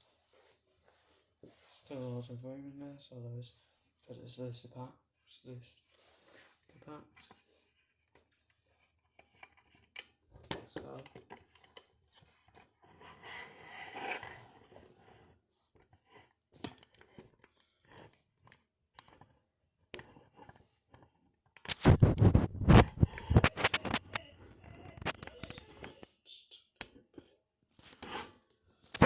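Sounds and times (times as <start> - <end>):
objects scraping and knocking: 21.7 - 25.6, 27.8 - 29.0.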